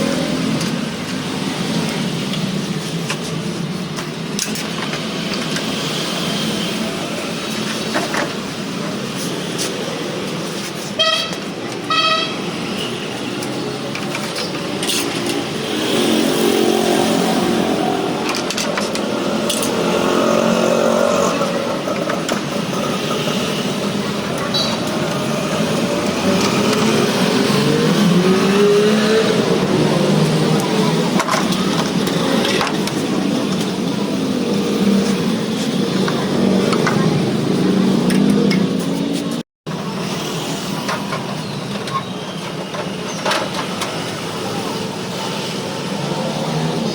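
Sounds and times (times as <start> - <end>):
vehicle engines passing: 0.0 - 46.9
car horn toot: 11.0 - 12.4.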